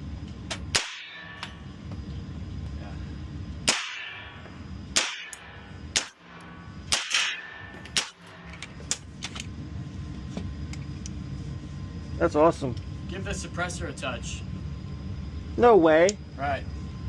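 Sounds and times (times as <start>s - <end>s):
suppressed gunshots: 0.7s - 1.6s, 3.6s - 9.0s.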